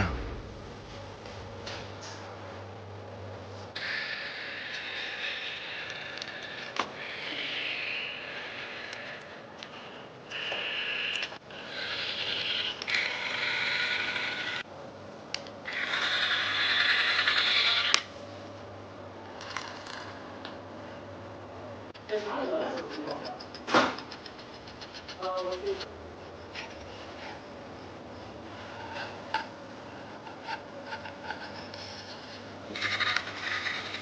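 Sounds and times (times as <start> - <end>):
small tools scraping: 28.6 - 34.0.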